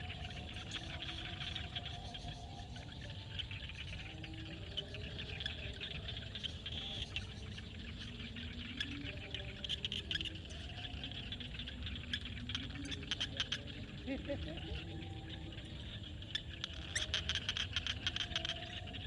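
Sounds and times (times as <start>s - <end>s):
frog calls: 0.0s - 19.0s
insects chirping and trilling: 0.0s - 19.0s.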